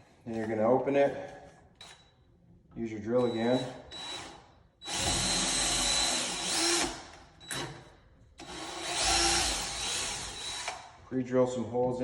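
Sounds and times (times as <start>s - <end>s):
power drill drilling into wood: 4.9s - 7.0s, 8.4s - 10.8s.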